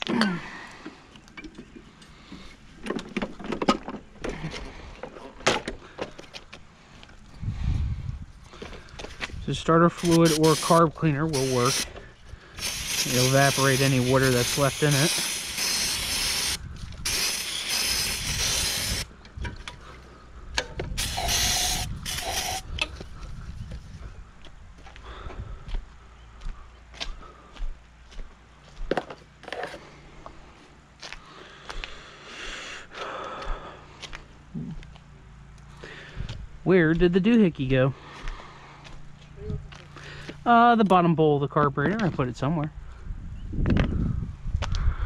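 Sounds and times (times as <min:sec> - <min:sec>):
aerosol spray hissing: 0:10.0 - 0:11.9, 0:12.6 - 0:19.1, 0:21.0 - 0:22.7.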